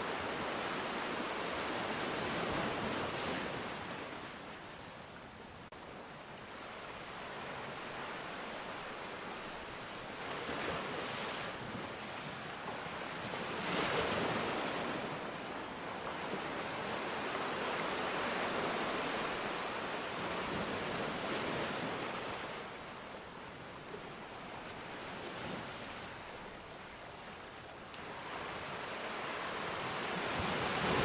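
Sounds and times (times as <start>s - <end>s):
sea waves washing on shore: 6.0s - 31.0s.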